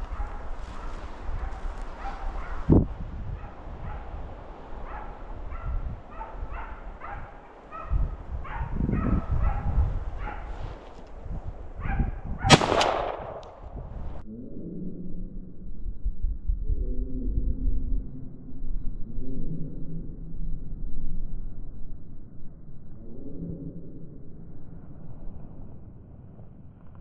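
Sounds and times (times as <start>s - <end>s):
dog barking and yelping: 0.0s - 11.0s, 11.8s - 12.4s
gunshot: 12.5s - 13.9s.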